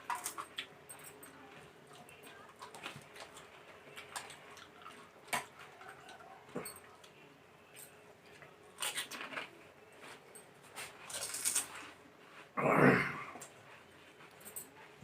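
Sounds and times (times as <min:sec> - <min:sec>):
wet chewing and slurping: 0:01.9 - 0:06.2
crisp shells crunching: 0:11.1 - 0:11.8.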